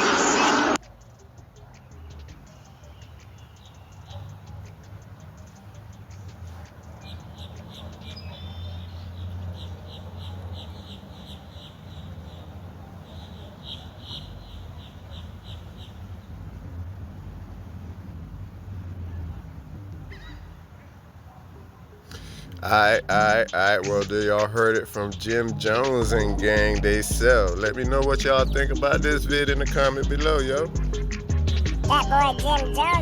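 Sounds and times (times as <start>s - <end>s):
bird chirping: 1.0s - 16.6s, 22.1s - 33.0s
steady low hum: 22.3s - 33.0s.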